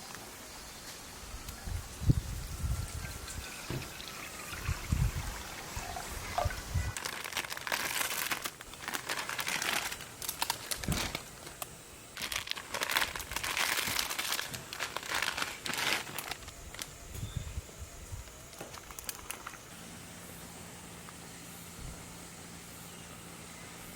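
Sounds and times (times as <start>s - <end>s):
wrapper crinkling and rustling: 6.9s - 17.2s, 18.2s - 19.7s.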